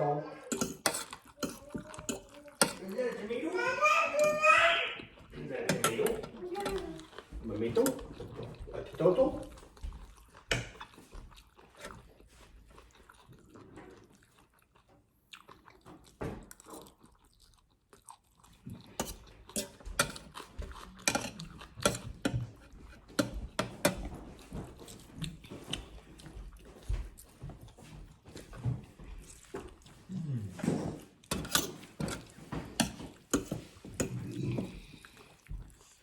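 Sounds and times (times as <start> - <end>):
person chewing crunchy food: 0.4 - 3.4, 4.9 - 36.0.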